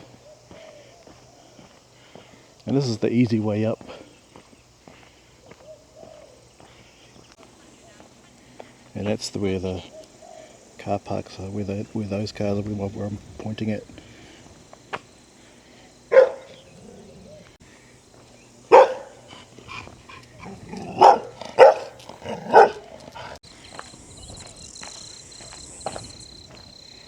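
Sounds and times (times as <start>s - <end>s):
dog barking: 16.1s - 17.2s, 18.7s - 19.3s, 20.4s - 23.4s.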